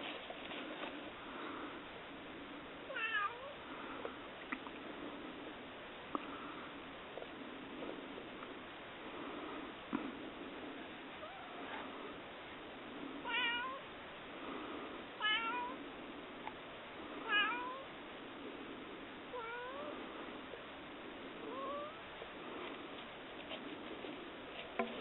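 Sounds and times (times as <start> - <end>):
cat meowing: 2.9 - 3.6, 11.2 - 11.8, 13.2 - 13.9, 15.2 - 15.8, 17.2 - 17.9, 19.3 - 19.9, 21.5 - 22.0.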